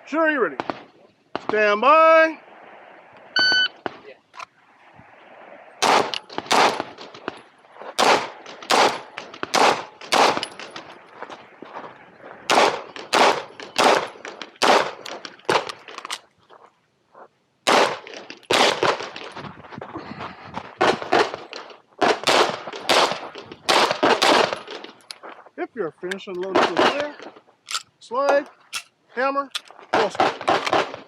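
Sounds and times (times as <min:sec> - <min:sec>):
pistol firing rapid shots: 0:05.8 - 0:07.0, 0:08.0 - 0:10.4, 0:12.5 - 0:15.7, 0:17.7 - 0:19.2, 0:22.0 - 0:24.6, 0:30.2 - 0:31.0.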